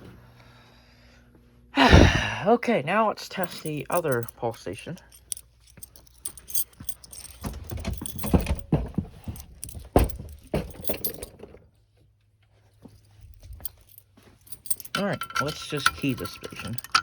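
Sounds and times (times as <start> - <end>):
keys jangling: 3.4 - 11.4, 12.9 - 17.0
handling clicks and knocks: 3.4 - 11.6, 13.0 - 17.0.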